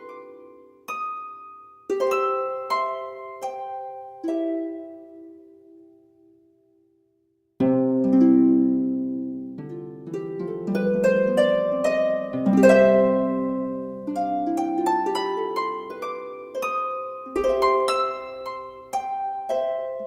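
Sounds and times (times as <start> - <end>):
plucked string music: 7.6 - 20.0.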